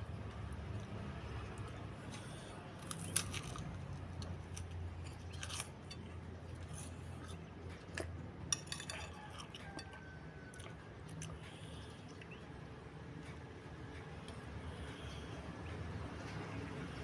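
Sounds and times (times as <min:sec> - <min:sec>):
cutlery clicking and scraping a bowl: 0:08.5 - 0:10.0.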